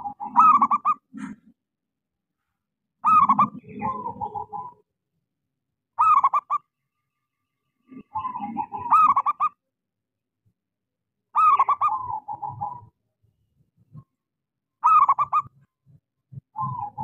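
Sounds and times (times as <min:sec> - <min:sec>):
dove cooing: 0:00.0 - 0:01.5, 0:03.0 - 0:04.8, 0:07.8 - 0:09.6, 0:11.4 - 0:12.9, 0:14.8 - 0:15.6, 0:16.3 - 0:17.0.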